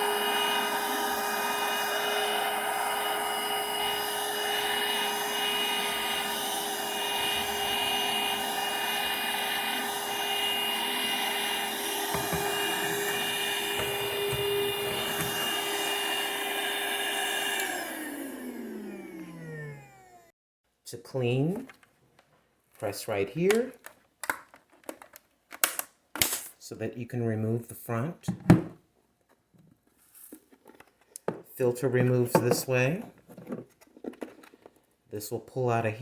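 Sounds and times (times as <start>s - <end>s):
handheld vacuum motor whining: 0.0s - 20.3s
vacuum motor winding down: 0.0s - 20.3s.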